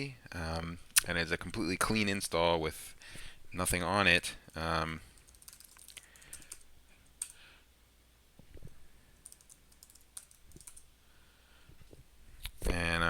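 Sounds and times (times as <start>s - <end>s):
computer keyboard keystrokes: 5.2s - 6.6s, 9.2s - 10.8s.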